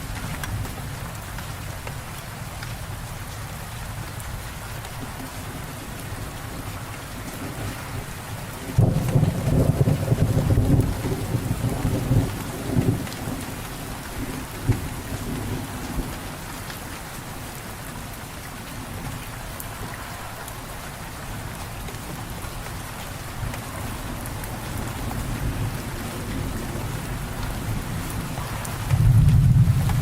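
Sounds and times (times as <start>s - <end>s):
steady rain falling: 0.0s - 30.0s
thunder rumble: 6.5s - 16.3s, 23.4s - 30.0s.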